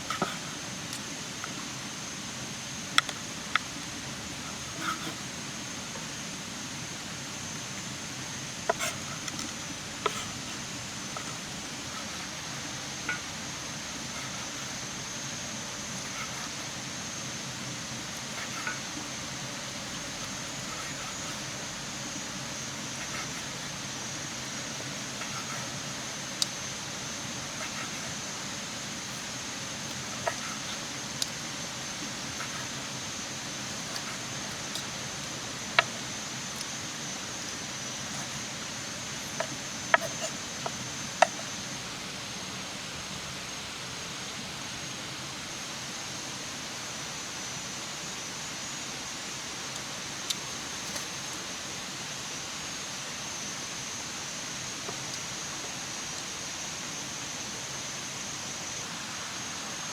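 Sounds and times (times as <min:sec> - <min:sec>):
food hissing over open fire: 0:00.0 - 0:42.0.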